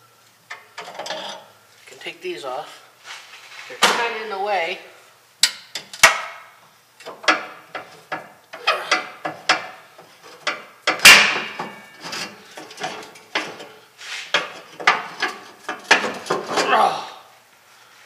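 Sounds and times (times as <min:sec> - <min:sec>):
loud metal clank: 0:10.9 - 0:13.5.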